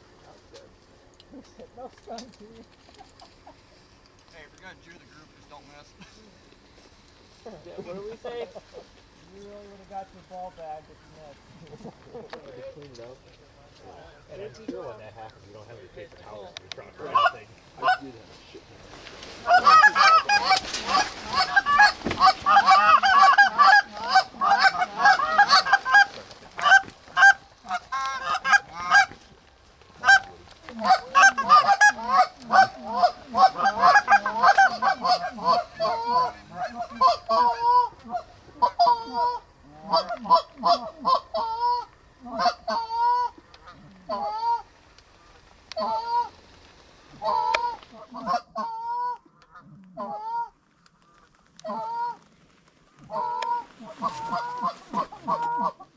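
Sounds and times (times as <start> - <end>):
geese honking: 0.0 - 4.1, 4.8 - 52.3, 52.9 - 55.9.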